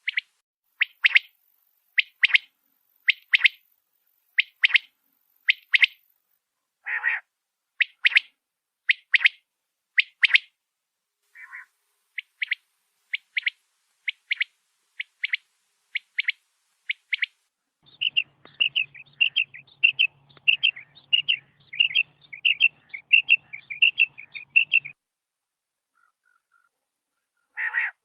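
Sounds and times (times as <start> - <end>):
quail calling: 5.5 - 6.0, 6.8 - 8.3, 11.3 - 15.4, 16.0 - 25.0, 27.4 - 28.0.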